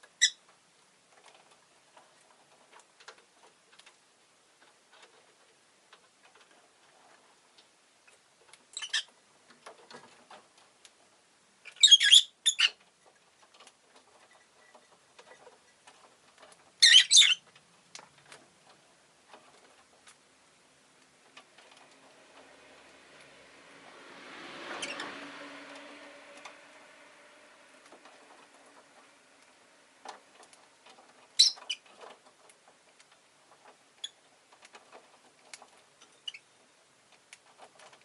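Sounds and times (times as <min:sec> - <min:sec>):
faint ticks and clicks: 0:00.0 - 0:11.1, 0:17.4 - 0:20.3
bird high-pitched chirps: 0:08.8 - 0:09.1, 0:11.7 - 0:12.8, 0:16.8 - 0:17.4, 0:31.4 - 0:31.8.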